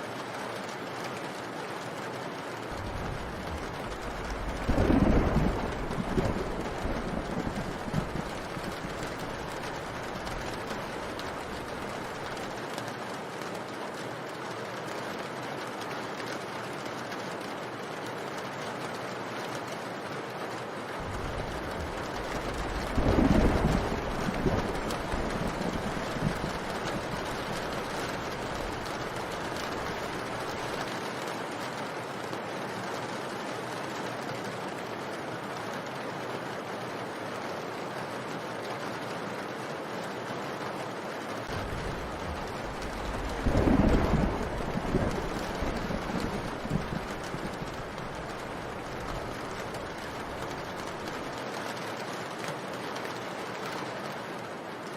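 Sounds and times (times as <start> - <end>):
steady rain hiss: 0.0 - 54.9
low rumble of thunder: 2.7 - 12.6, 21.0 - 30.9, 41.5 - 51.4.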